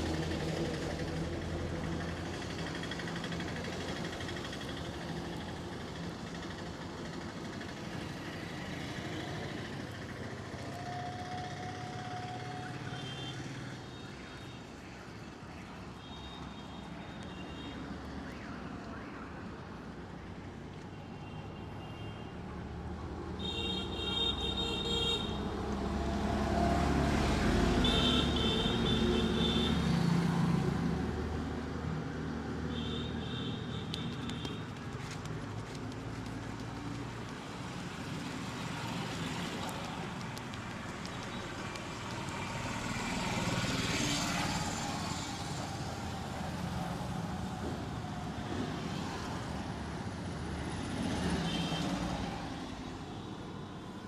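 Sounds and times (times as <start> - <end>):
vehicles passing: 0.0 - 54.0
car horn beeps: 27.8 - 29.8.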